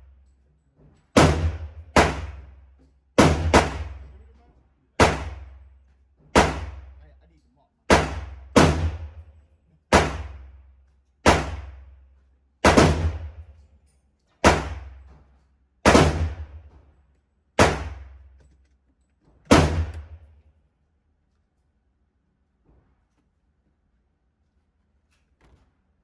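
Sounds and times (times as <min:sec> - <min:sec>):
pistol shots echoing: 0:01.2 - 0:02.4, 0:03.2 - 0:04.0, 0:05.0 - 0:05.4, 0:06.4 - 0:06.9, 0:07.9 - 0:09.2, 0:09.9 - 0:10.4, 0:11.3 - 0:11.7, 0:12.6 - 0:13.4, 0:14.4 - 0:14.9, 0:15.9 - 0:16.6, 0:17.6 - 0:18.1, 0:19.5 - 0:20.2.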